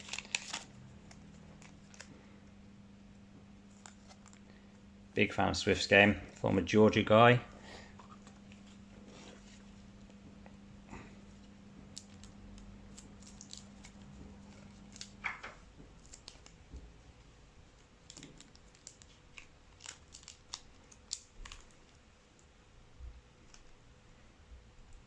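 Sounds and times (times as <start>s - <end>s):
plastic card sleeves crinkling: 0.0s - 2.2s, 3.7s - 4.6s, 5.7s - 10.2s, 11.3s - 16.6s, 17.8s - 22.0s
faint low hum: 0.0s - 25.0s.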